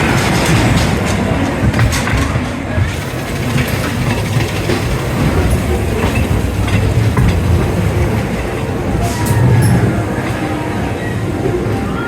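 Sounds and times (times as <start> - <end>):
sharp track clacks: 0.2 - 10.4
ride car low rumble: 2.7 - 12.0.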